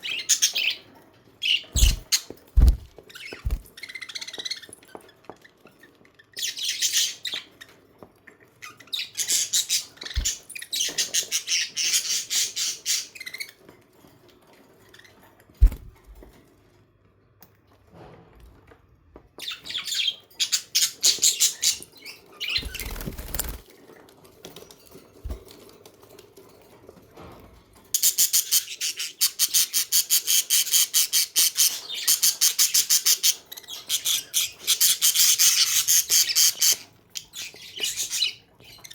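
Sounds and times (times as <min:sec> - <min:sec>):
budgerigars chattering: 0:01.5 - 0:02.2.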